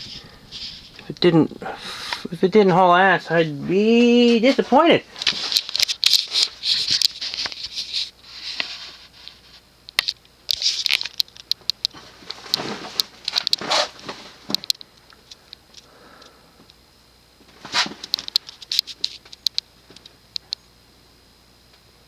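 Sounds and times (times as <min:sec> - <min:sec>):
ceiling fan air rushing: 0:00.0 - 0:21.3
sharp clicks and ticks: 0:09.9 - 0:12.0, 0:18.1 - 0:20.6.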